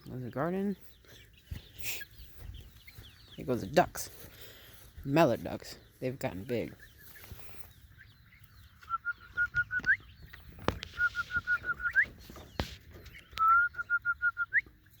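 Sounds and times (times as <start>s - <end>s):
chicken cackling: 6.4s - 15.0s.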